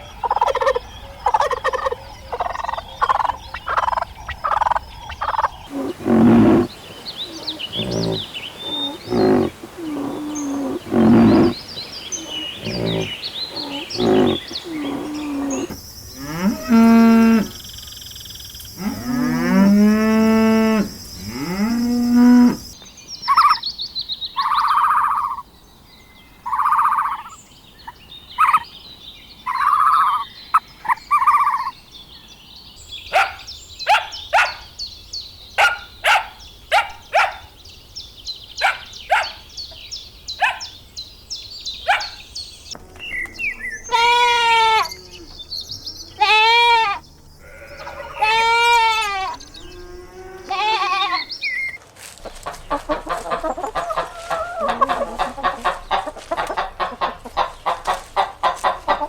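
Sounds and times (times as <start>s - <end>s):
rapid clucking calls: 0.0s - 15.8s, 28.4s - 28.6s, 52.2s - 59.0s
goats bleating: 43.8s - 45.4s, 46.2s - 49.4s, 50.4s - 51.3s.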